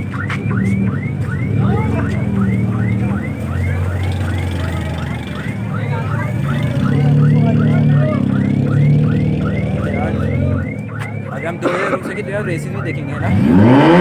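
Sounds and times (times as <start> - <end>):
car engine revving: 0.0 - 11.7, 12.4 - 14.0.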